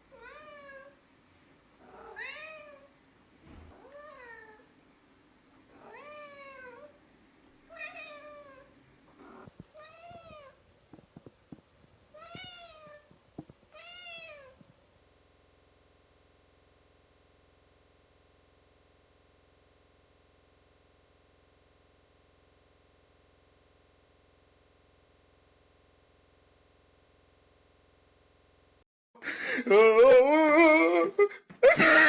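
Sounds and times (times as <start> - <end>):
cat meowing: 1.8 - 2.9, 3.7 - 4.7, 5.8 - 7.0, 7.7 - 10.6, 12.2 - 13.1, 13.8 - 14.6.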